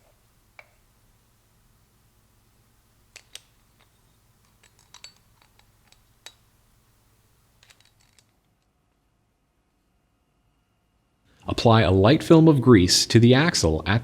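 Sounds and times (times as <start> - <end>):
metallic clicks and taps: 3.1 - 6.5.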